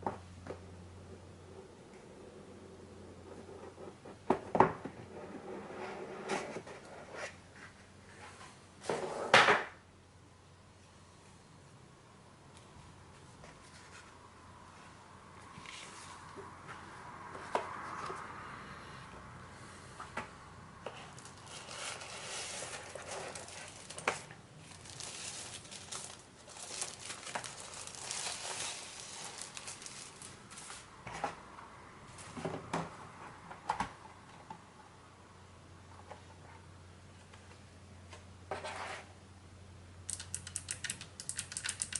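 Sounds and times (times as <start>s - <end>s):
packaging rustling and crinkling: 21.0s - 30.9s
sharp clicks and knocks: 40.1s - 41.9s.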